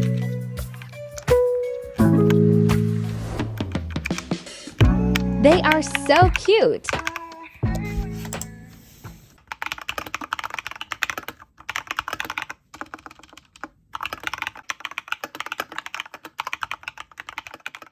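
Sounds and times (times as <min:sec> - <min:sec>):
fast typing on mechanical keyboard: 0:05.6 - 0:07.9, 0:09.4 - 0:17.9.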